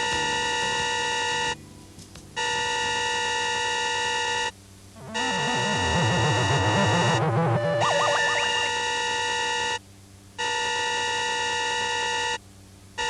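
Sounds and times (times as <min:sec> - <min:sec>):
wavering electronic tones: 0:05.0 - 0:09.1
electronic alarm buzzer: 0:05.0 - 0:09.7.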